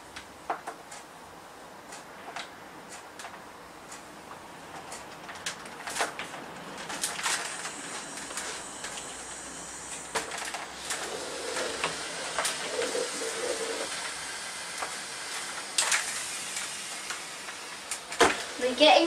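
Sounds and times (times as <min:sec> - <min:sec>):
steam mop hissing: 0:07.4 - 0:19.0.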